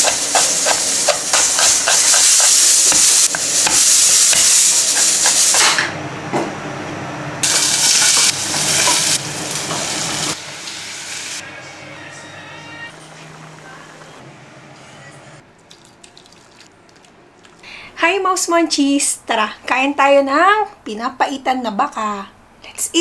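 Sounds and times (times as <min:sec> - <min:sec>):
utensil clicking against pan: 0:00.0 - 0:02.6
food sizzling in a pan: 0:00.0 - 0:05.8, 0:07.4 - 0:11.4.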